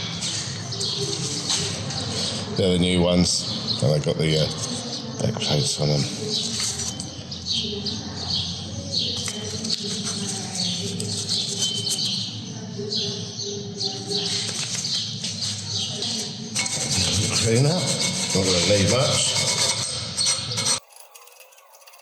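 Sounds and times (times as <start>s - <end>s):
brush scrubbing metal: 9.2s - 12.2s, 14.2s - 22.0s.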